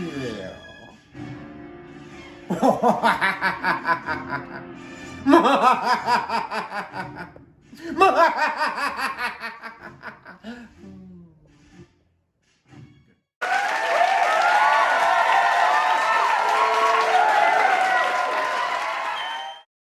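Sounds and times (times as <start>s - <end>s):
background music: 0.0s - 13.2s
man laughing like a villain: 2.5s - 10.6s.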